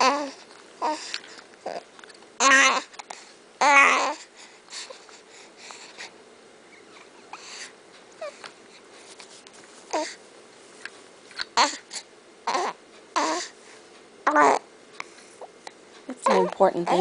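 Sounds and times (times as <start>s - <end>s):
baby babbling and squealing: 2.4s - 2.9s, 3.6s - 4.2s, 12.5s - 13.5s, 16.2s - 16.6s.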